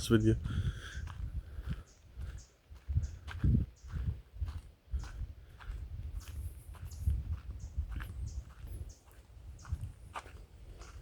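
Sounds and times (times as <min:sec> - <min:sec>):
footsteps crunching on dirt: 0:00.0 - 0:11.0
low wind rumble: 0:00.0 - 0:11.0.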